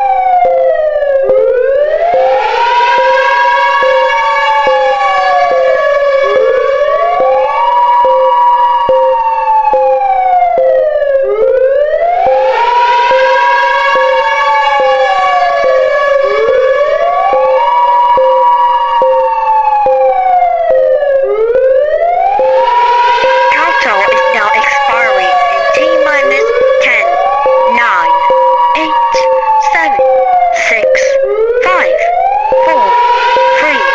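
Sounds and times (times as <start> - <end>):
air-raid siren wailing: 1.8 - 8.1, 22.2 - 27.3.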